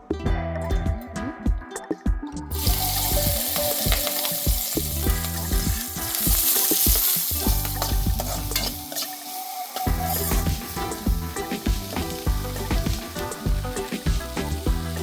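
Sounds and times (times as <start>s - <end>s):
food sizzling in hot oil: 2.5s - 15.0s
spatula scraping a pan: 2.6s - 12.2s.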